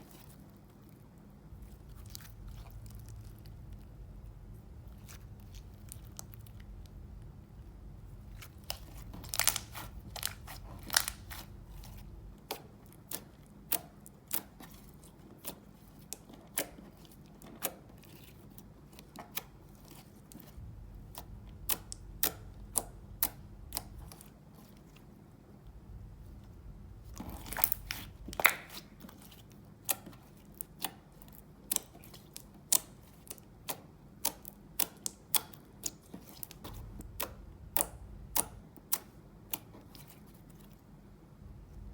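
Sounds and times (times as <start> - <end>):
slime clicking and popping: 27.4 - 28.8, 31.7 - 39.7.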